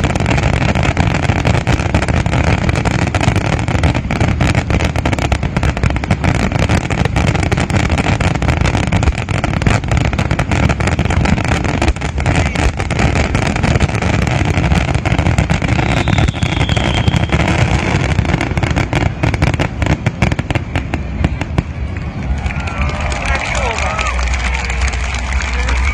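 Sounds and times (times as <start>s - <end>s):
fireworks bangs and crackles: 0.0s - 25.9s.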